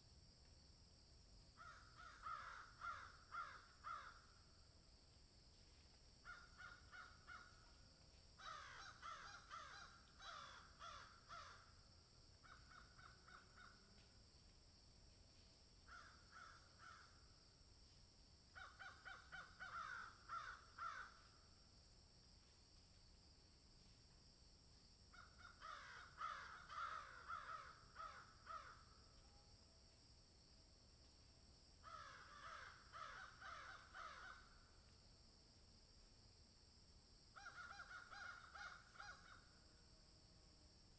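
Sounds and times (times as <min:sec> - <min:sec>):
crows and magpies calling: 0:01.6 - 0:04.3, 0:06.2 - 0:07.6, 0:08.4 - 0:11.7, 0:12.4 - 0:13.8, 0:15.9 - 0:17.2, 0:18.6 - 0:21.2, 0:25.2 - 0:28.8, 0:31.8 - 0:34.6, 0:37.4 - 0:39.5.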